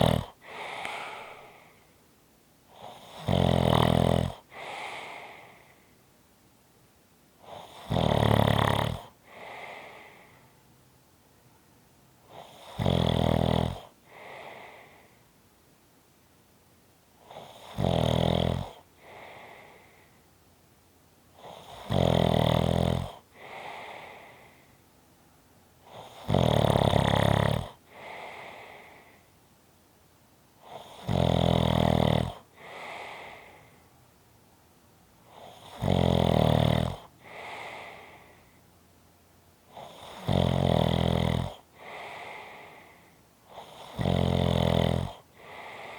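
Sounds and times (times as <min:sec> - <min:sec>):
person snoring: 0:00.0 - 0:01.8, 0:02.7 - 0:05.8, 0:07.4 - 0:10.4, 0:12.3 - 0:15.2, 0:17.2 - 0:20.1, 0:21.4 - 0:24.6, 0:25.9 - 0:29.2, 0:30.6 - 0:33.8, 0:35.3 - 0:38.4, 0:39.7 - 0:45.9
breathy breath: 0:00.0 - 0:02.0, 0:04.4 - 0:06.0, 0:09.1 - 0:10.7, 0:13.8 - 0:15.4, 0:18.7 - 0:20.3, 0:23.2 - 0:24.9, 0:27.7 - 0:29.4, 0:32.4 - 0:34.0, 0:37.0 - 0:38.8, 0:41.6 - 0:43.9, 0:45.2 - 0:45.9.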